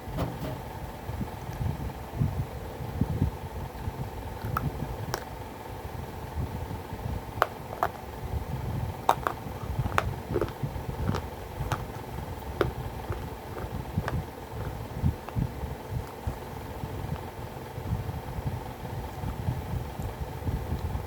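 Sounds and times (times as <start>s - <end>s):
faint steady hum: 0.0s - 21.0s
low chewing sound: 9.0s - 17.6s
sharp crunches and cracks: 9.1s - 15.4s.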